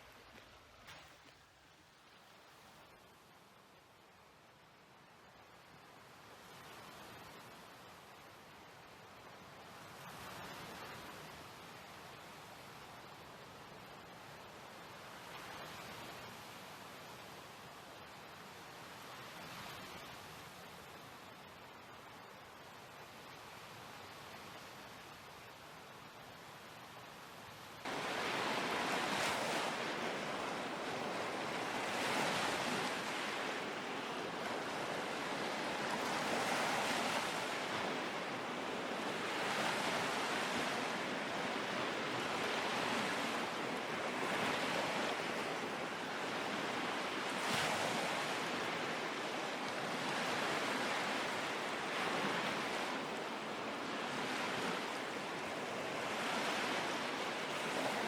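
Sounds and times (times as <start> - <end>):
waves splashing on shore: 27.8 - 58.0.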